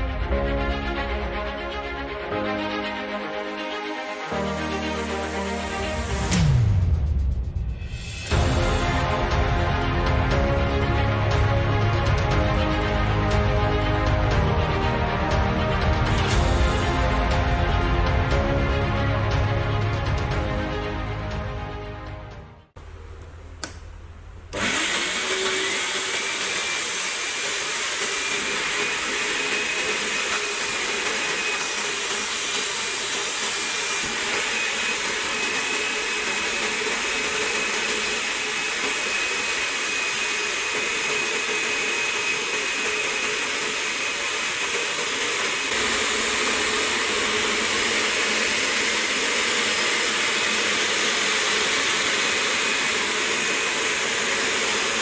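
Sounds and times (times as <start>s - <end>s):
suction motor whining and hissing: 22.9s - 55.0s.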